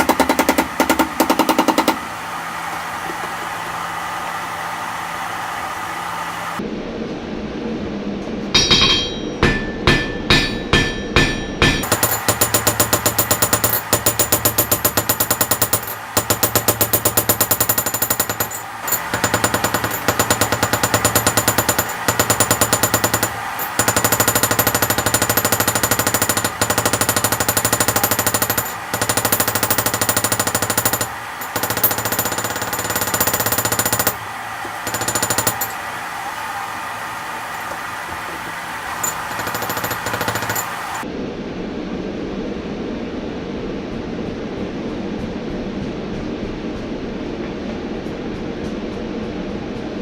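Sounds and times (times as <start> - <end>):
powered hammer striking steel plate: 0.0 - 3.4, 8.5 - 35.8, 38.9 - 41.0.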